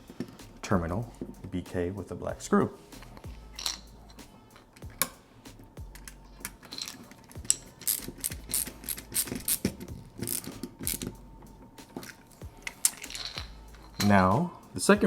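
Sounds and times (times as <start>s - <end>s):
screwdriver clicks and scrapes: 5.9s - 11.2s, 11.9s - 14.2s.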